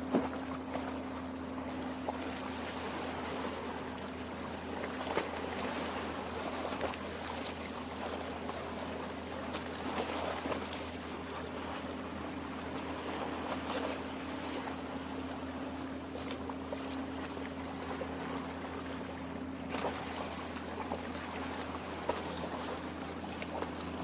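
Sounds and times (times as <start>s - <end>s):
water lapping at shore: 0.0s - 24.0s
small water splashes: 16.2s - 24.0s.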